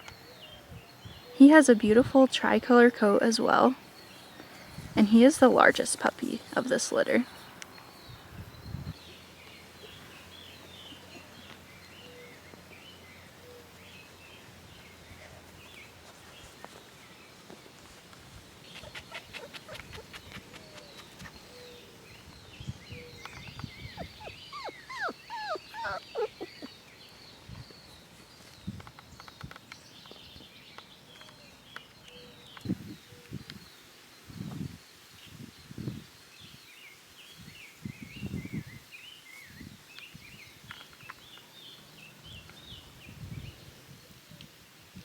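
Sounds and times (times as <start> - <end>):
faint bird chirps: 18.7 - 26.9
puppy whimpering: 23.8 - 26.7.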